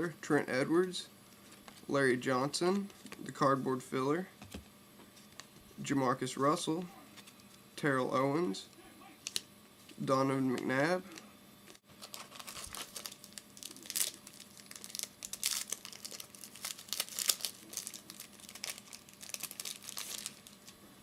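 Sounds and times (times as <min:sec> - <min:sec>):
plastic wrapper tearing and crinkling: 0:11.9 - 0:20.7.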